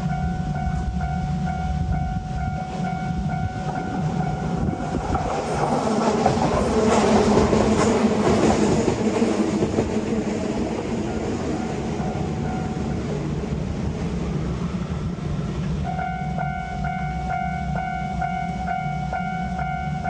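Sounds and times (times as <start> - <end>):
level-crossing alarm ringing: 0.0 - 5.0, 15.8 - 20.0
train running past: 0.0 - 20.0.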